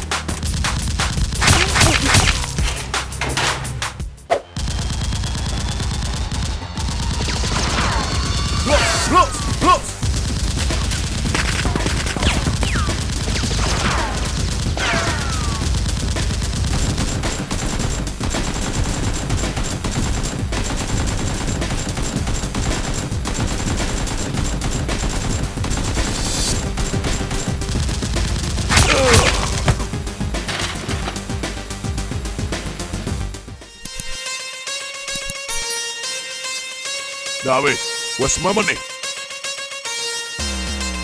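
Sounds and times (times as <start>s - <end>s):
rapid automatic gunfire: 0.4s - 3.1s, 4.6s - 7.8s, 9.4s - 31.5s.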